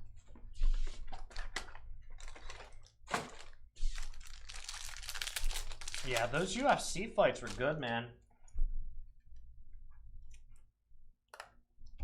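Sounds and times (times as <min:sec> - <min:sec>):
wrappers rustling and crinkling: 0:00.6 - 0:07.9.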